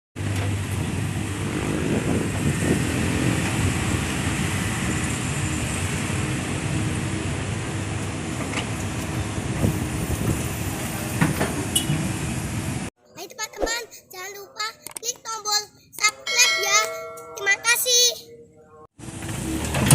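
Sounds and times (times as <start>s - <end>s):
diesel excavator engine running: 0.2s - 12.9s.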